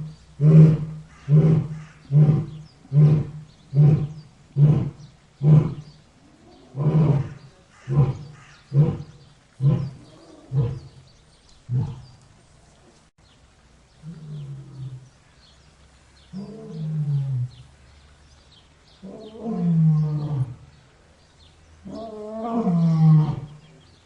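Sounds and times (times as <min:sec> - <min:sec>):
lion roaring: 0:00.4 - 0:11.0, 0:11.7 - 0:12.2, 0:16.3 - 0:17.6, 0:19.0 - 0:20.7, 0:21.8 - 0:23.7.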